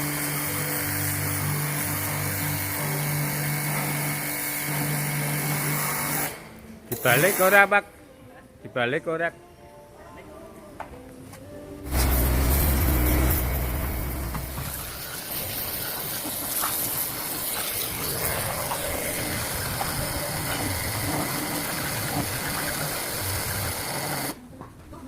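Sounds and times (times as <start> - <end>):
high-pressure water jet hissing: 0.0 - 7.8, 11.9 - 24.4
heavy low rumble: 11.9 - 15.1.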